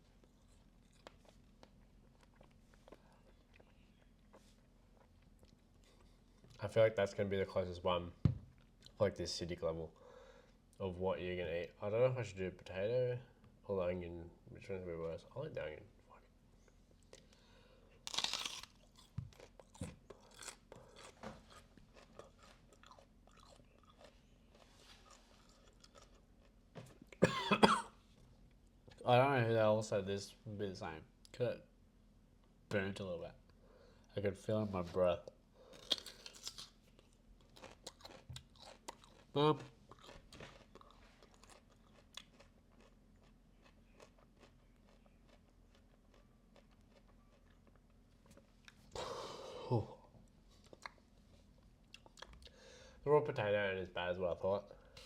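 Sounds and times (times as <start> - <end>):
person crunching raw onion: 18.0 - 26.5, 35.7 - 47.9.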